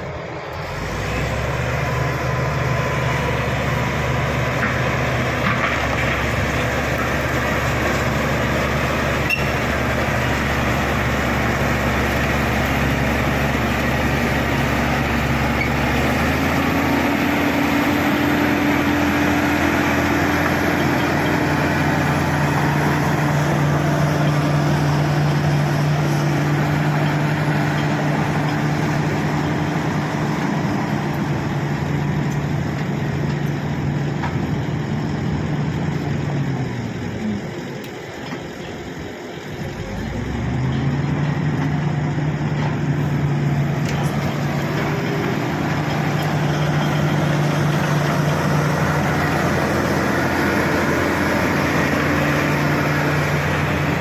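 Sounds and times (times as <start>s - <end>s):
bulldozer diesel engine running: 0.0s - 54.0s.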